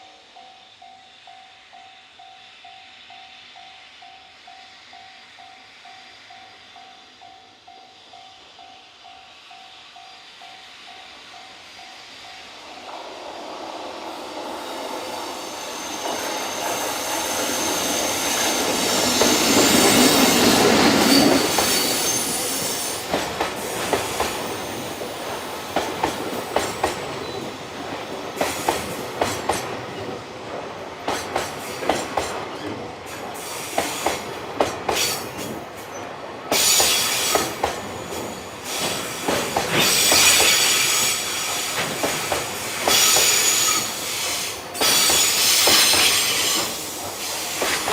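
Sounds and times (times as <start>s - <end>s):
electric locomotive passing: 0.0s - 47.9s
wheel flanges squealing: 14.2s - 23.2s
wheels clacking over rail joints: 16.0s - 40.9s.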